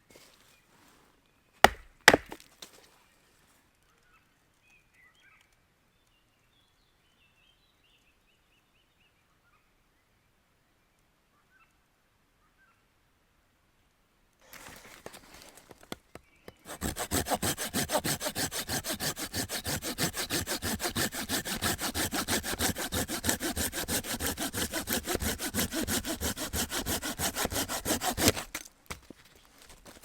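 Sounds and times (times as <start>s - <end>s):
saw cutting through wood: 1.7s - 2.4s, 16.6s - 29.1s
light saw scrapes: 14.4s - 15.9s, 16.6s - 30.0s.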